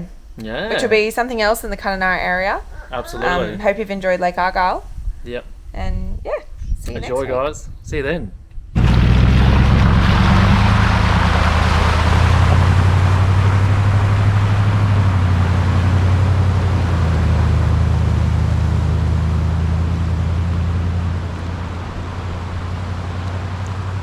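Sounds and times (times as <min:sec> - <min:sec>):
vehicle engine droning: 0:08.8 - 0:24.0.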